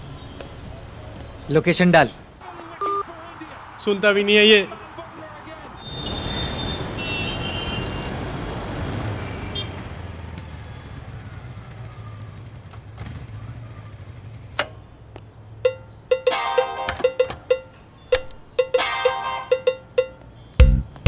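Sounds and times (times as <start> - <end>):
percussion strikes: 15.6 - 21.0.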